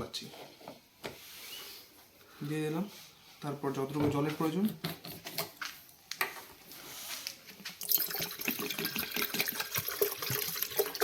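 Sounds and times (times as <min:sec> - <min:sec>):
water running into kettle: 0:07.8 - 0:11.0.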